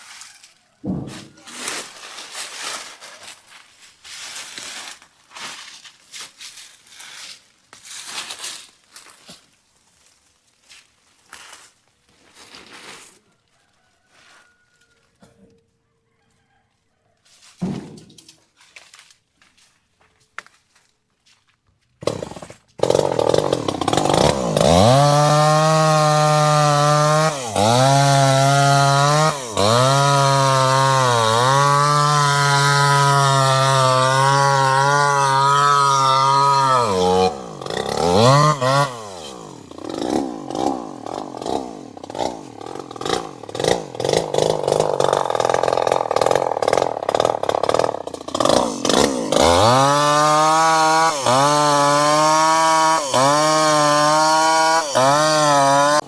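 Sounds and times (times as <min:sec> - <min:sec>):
chainsaw engine revving: 0:22.0 - 0:56.0.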